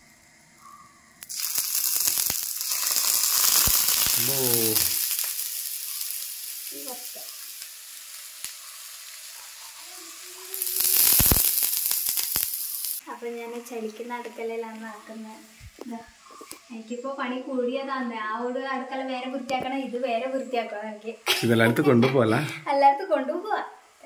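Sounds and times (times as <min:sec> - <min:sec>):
bread sizzling in a pan: 0:00.0 - 0:16.4.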